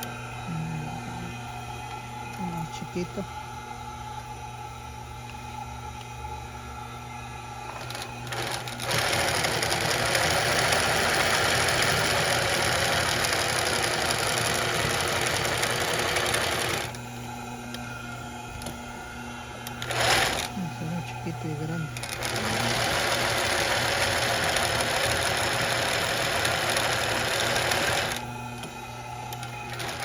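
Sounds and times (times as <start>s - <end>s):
sewing machine motor humming: 7.7s - 17.0s, 19.6s - 30.0s
sewing machine running at speed: 7.8s - 17.0s, 19.8s - 20.5s, 22.0s - 28.2s, 29.4s - 30.0s.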